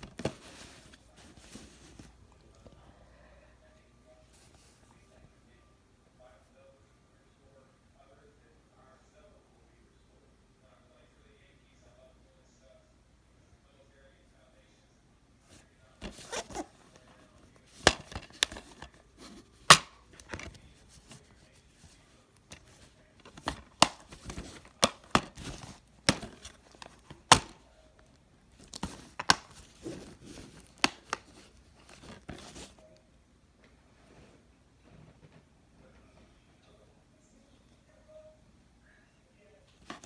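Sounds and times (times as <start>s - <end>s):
crinkling and rustling: 0.0s - 2.8s, 15.5s - 33.0s, 39.7s - 40.0s.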